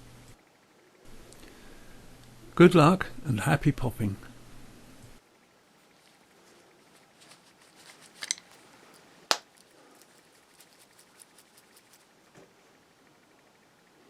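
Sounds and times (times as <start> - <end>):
fabric handling: 5.8 - 8.8.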